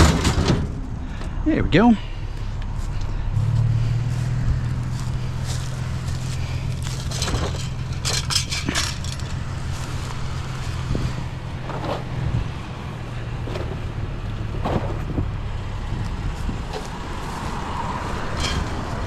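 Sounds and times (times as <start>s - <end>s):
scrap metal clattering: 0.0s - 0.9s, 4.9s - 12.2s, 16.7s - 19.0s
vehicle engine idling: 0.0s - 19.0s.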